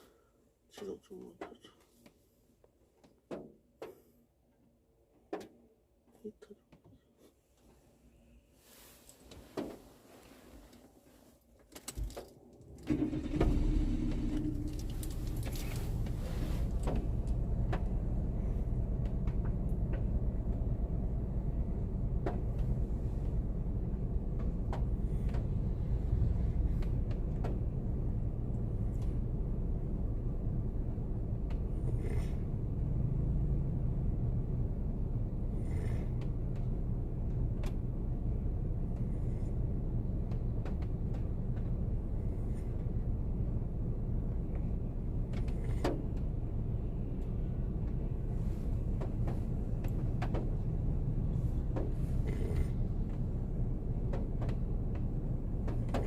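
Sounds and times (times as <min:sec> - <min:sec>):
car engine starting and idling: 0:11.8 - 0:56.0.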